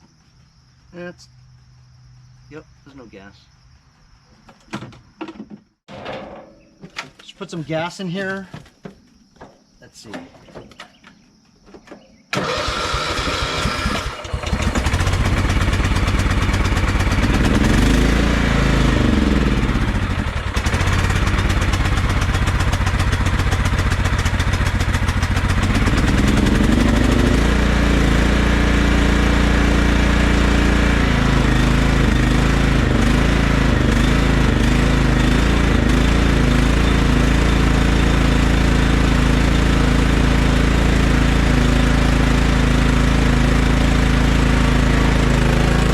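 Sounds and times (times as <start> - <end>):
electric starter cranking: 12.3 - 27.4
lawn tractor engine running: 12.3 - 45.9.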